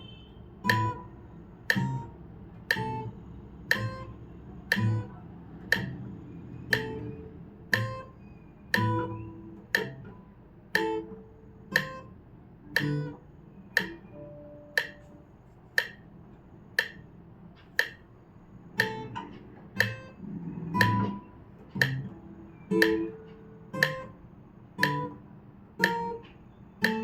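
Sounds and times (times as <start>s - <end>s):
plucked guitar notes: 0.5s - 16.2s, 18.7s - 27.0s
metronome ticking: 0.5s - 27.0s.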